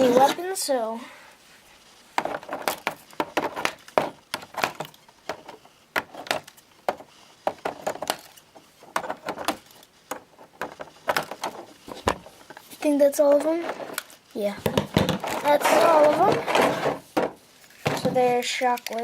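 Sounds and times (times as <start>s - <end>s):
plastic packaging clicks and crinkles: 17.5s - 19.0s.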